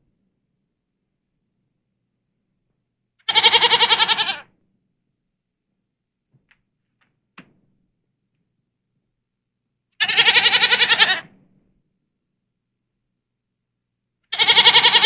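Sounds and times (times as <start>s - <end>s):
sheep bleating: 3.3s - 4.4s, 10.0s - 11.2s, 14.3s - 15.0s.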